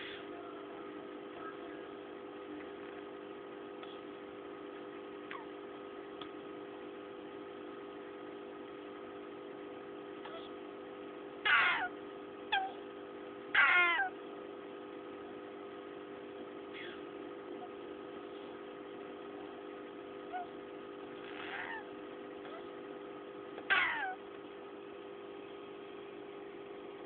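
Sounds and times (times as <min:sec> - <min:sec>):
steady hum: 0:00.0 - 0:27.0
turtle high falling calls: 0:13.6 - 0:14.1.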